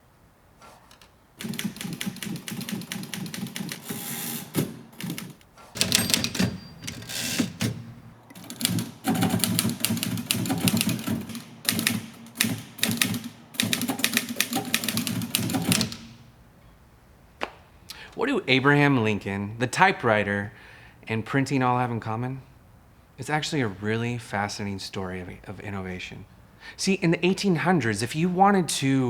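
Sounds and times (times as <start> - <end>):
typewriter keys clicking: 0.9 - 16.2.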